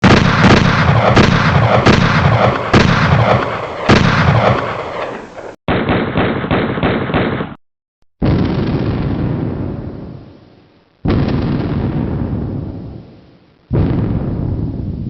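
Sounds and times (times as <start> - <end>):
automatic gunfire: 0.0 - 7.6
heavy gunshots with rumbling tail: 0.0 - 7.6, 8.2 - 15.0.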